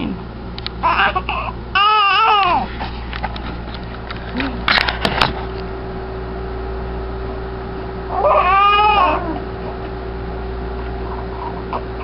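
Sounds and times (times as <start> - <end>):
cat meowing: 8.1 - 9.4.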